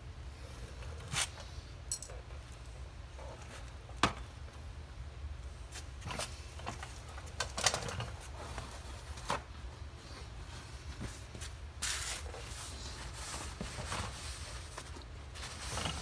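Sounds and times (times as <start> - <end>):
metal tools and bolts clinking: 1.9 - 2.2.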